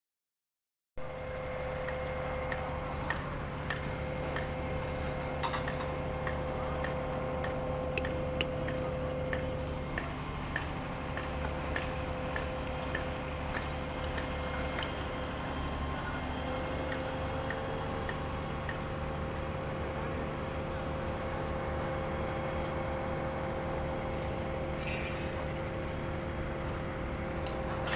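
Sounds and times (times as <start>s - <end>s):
machinery droning: 1.0s - 27.9s
sharp metallic ticks: 5.6s - 15.1s.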